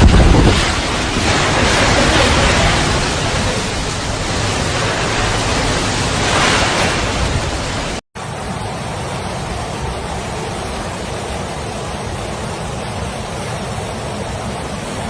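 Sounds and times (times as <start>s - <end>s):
heavy rain: 0.0s - 15.0s
strong wind: 0.0s - 15.0s
wind buffeting microphone: 0.0s - 15.0s.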